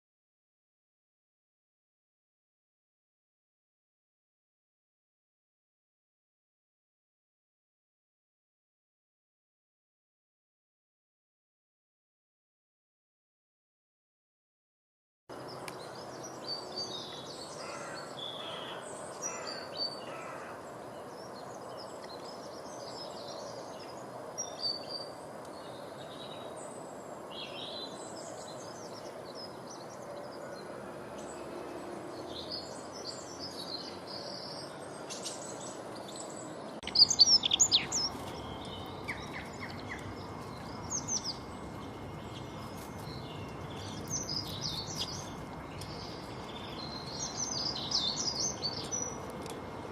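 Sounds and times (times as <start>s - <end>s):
birds chirping and calling: 15.4s - 26.8s, 27.4s - 49.6s.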